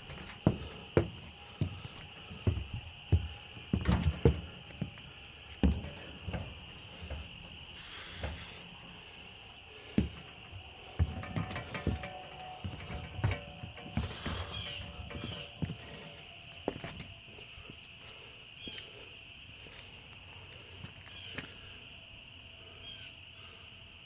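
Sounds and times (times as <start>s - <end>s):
knocks and thumps: 0.0s - 9.2s, 9.8s - 16.1s
steady high hiss: 0.0s - 20.4s.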